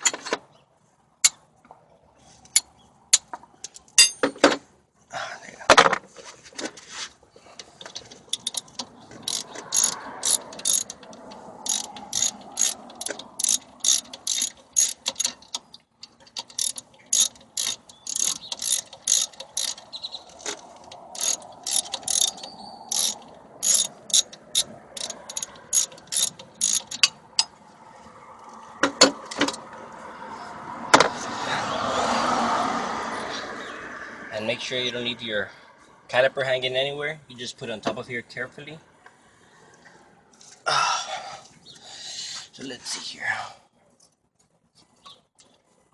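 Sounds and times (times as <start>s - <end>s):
socket ratchet clicking: 7.9s - 27.5s.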